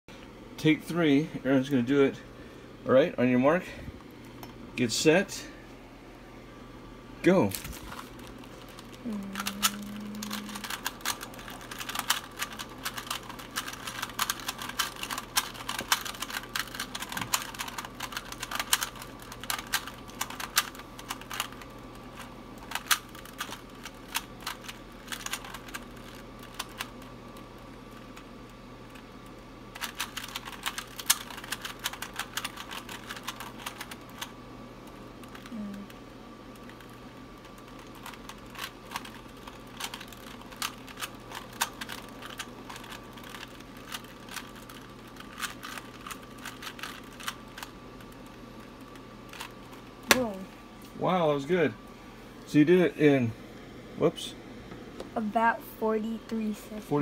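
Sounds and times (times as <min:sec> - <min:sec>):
puzzle cube plastic clicks: 0:07.9 - 0:27.1, 0:29.8 - 0:34.3, 0:36.6 - 0:50.2.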